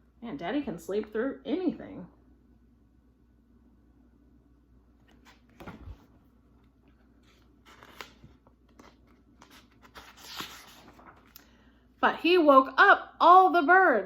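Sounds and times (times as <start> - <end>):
book page turning: 5.0 - 6.2, 6.8 - 11.5
paper rustling: 5.0 - 6.2, 6.8 - 11.5.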